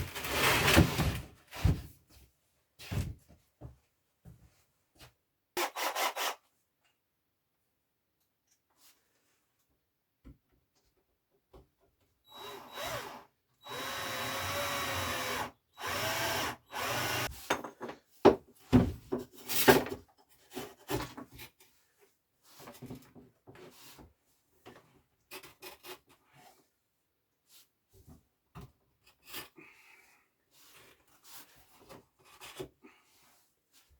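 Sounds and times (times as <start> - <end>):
cordless drill driving screws: 12.3 - 17.3.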